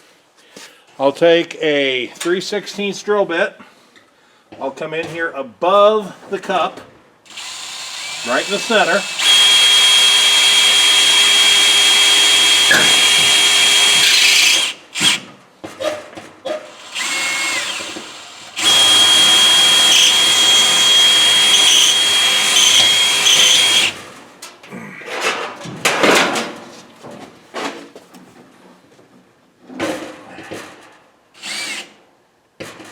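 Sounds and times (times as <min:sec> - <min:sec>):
electric drill whining: 0:07.3 - 0:15.2, 0:16.7 - 0:24.0, 0:31.4 - 0:31.9.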